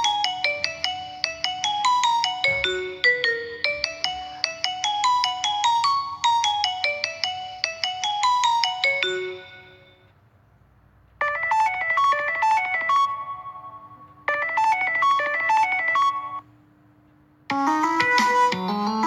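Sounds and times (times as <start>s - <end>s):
ringtone melody in midi notes: 0.0s - 10.1s, 11.2s - 16.5s, 17.5s - 19.0s.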